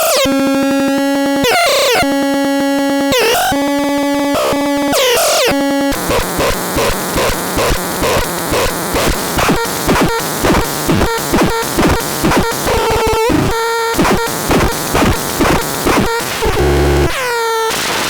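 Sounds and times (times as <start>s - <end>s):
harsh pulsing electronic noise: 0.0s - 0.4s, 1.4s - 2.2s, 3.1s - 18.0s
steady electronic tone: 1.0s - 10.1s.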